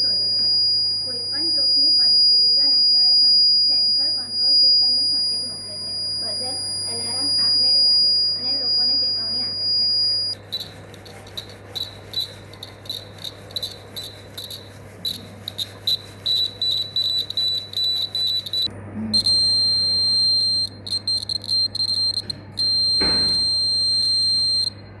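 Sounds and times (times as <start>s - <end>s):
electronic alarm buzzer beeping: 0.0s - 25.0s
knock: 23.0s - 23.4s.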